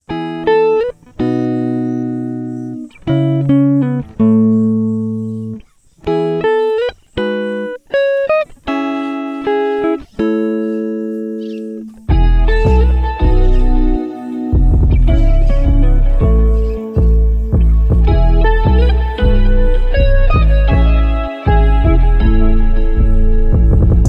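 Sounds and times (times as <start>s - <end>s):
plucked guitar chords: 0.0s - 24.0s.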